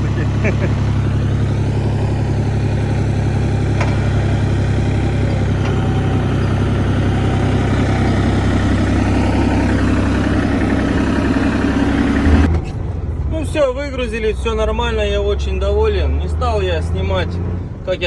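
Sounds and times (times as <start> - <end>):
engine idling: 0.0 - 18.0
short knocks: 1.8 - 12.5.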